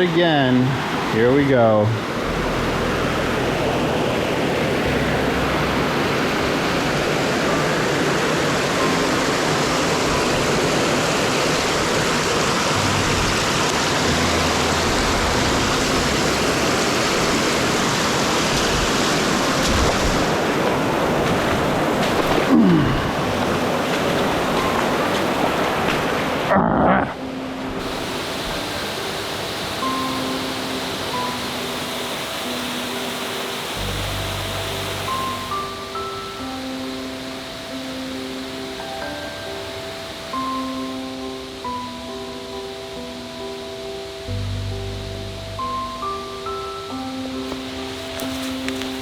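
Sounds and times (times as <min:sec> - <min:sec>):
brook rushing over rocks: 0:47.4 - 0:49.0.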